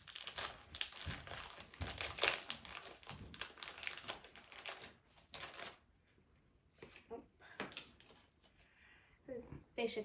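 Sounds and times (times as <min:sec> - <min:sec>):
foil wrapper crinkling: 0:00.0 - 0:05.8.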